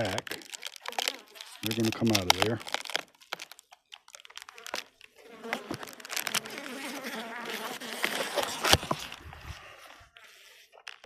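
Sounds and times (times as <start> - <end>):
bees buzzing: 4.4 - 10.5.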